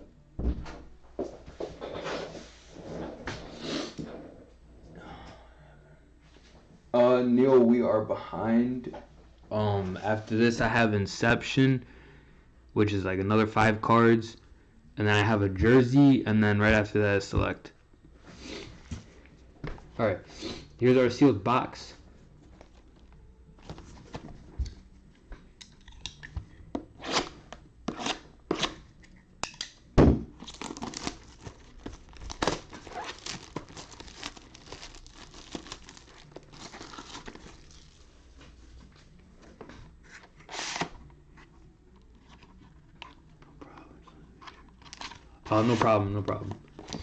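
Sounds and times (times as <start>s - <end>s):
plastic wrapping tearing and crinkling: 30.4s - 38.2s.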